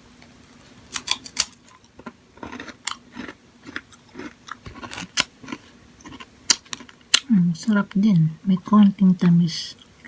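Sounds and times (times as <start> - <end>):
crunchy snack chewing: 0.9 - 7.3.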